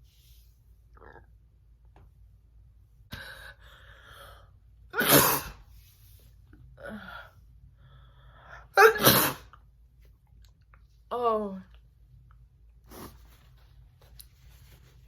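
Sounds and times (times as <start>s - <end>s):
woman sneezing: 5.0s - 5.6s, 8.8s - 9.5s.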